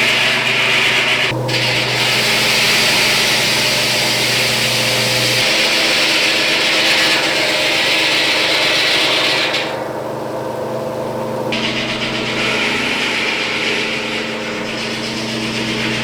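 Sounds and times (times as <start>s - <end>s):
rasping shredding: 0.0s - 9.8s.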